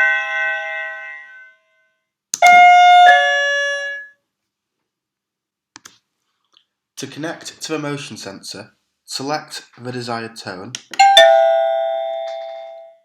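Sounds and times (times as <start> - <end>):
doorbell receiver click: 11.0 - 12.8
doorbell ding-dong chime: 11.0 - 13.0.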